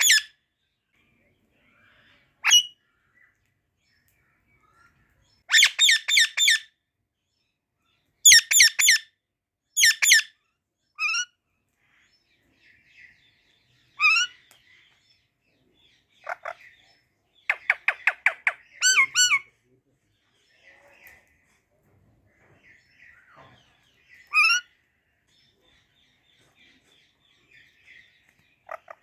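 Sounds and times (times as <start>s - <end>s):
parakeets chirping: 0.0s - 0.3s, 16.1s - 19.5s, 27.5s - 29.0s.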